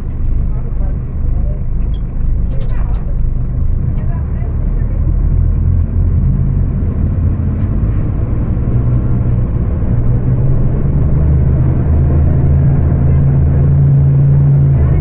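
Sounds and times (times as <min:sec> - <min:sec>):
bus diesel engine drone: 0:00.0 - 0:15.0.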